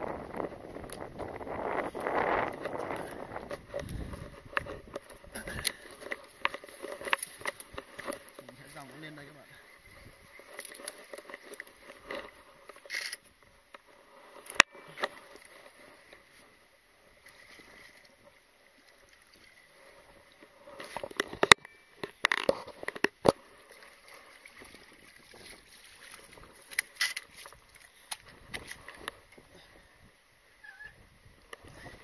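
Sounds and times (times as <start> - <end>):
water splashing: 17.0 - 21.2, 22.6 - 29.4.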